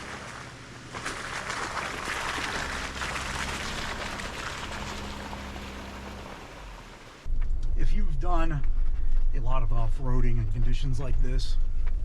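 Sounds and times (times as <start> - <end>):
engine running low: 0.0 - 7.6
tyres hissing through wet snow: 0.9 - 7.3.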